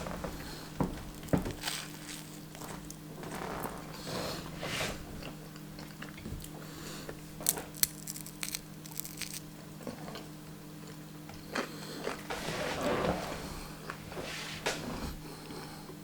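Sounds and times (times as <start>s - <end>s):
chewing toasted bread: 0.2s - 4.1s, 5.2s - 12.3s.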